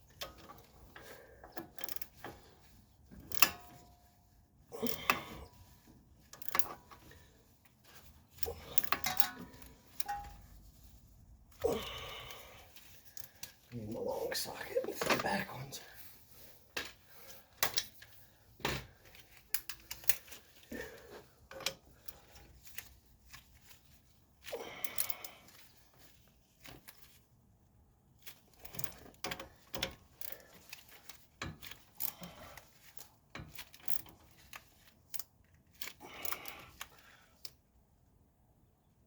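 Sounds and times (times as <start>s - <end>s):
hand tools clicking and clinking: 3.2s - 3.9s, 6.3s - 7.0s, 8.4s - 10.6s.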